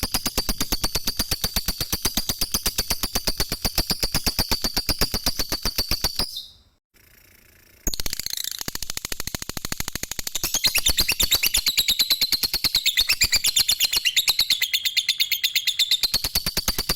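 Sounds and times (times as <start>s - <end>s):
lovebird chattering: 10.4s - 16.9s.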